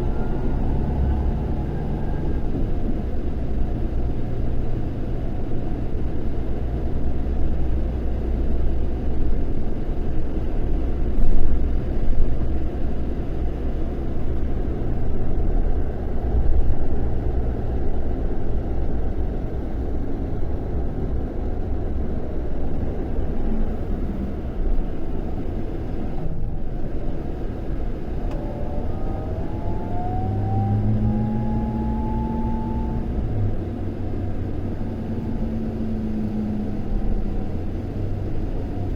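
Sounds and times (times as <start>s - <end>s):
rising whine: 0.0s - 3.2s, 28.1s - 33.6s
diesel engine rumbling: 0.0s - 38.9s.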